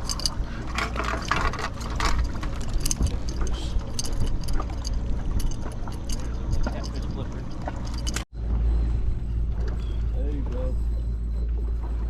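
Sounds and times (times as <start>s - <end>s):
clicks and rattles: 0.0s - 8.2s
steady low rumble: 0.0s - 12.0s.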